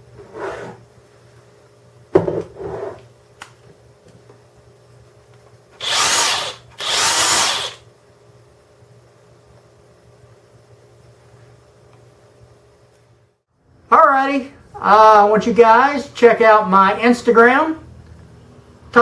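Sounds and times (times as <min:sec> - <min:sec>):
knock and handling noise: 0:02.1 - 0:02.6
power tool motor bursts: 0:05.8 - 0:07.8.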